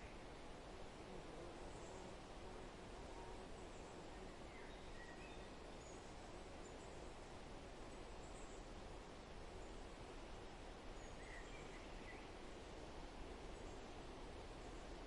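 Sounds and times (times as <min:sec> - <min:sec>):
wind through trees: 0:00.0 - 0:15.0
faint bird chirps: 0:03.2 - 0:07.1, 0:10.9 - 0:12.4.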